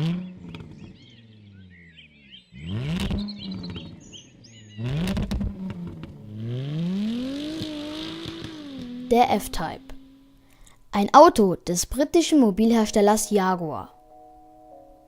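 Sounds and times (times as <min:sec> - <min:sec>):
car engine revving: 0:00.0 - 0:10.6
birds chirping: 0:00.0 - 0:10.7.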